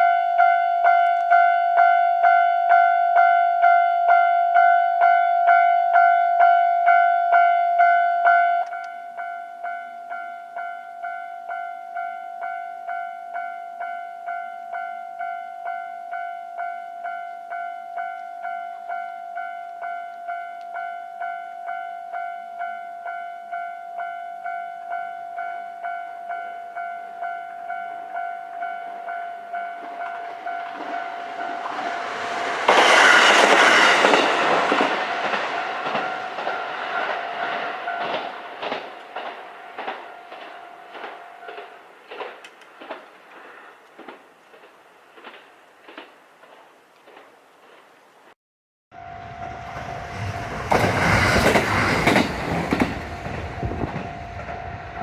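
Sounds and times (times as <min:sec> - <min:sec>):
diesel railcar passing: 0:00.0 - 0:48.4, 0:49.0 - 0:55.0
wheels clicking over rail joints: 0:27.9 - 0:48.4.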